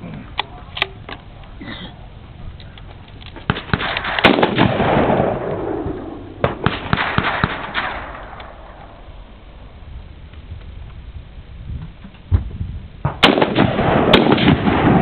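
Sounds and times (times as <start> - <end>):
rifle shots with echo: 3.4 - 9.0, 13.0 - 15.0.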